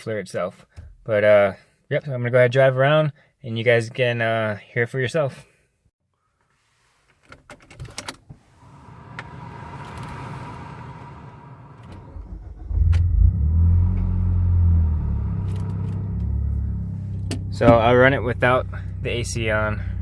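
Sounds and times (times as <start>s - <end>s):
car engine starting and idling: 8.0s - 20.0s
hiss with faint whine: 8.4s - 12.7s.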